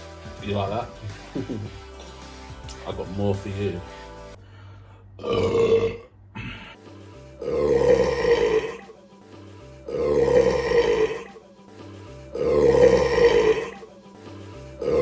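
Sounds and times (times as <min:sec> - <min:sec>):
man burping loudly: 0:05.2 - 0:06.8, 0:07.4 - 0:08.8, 0:09.9 - 0:11.3, 0:12.3 - 0:13.8, 0:14.8 - 0:15.0.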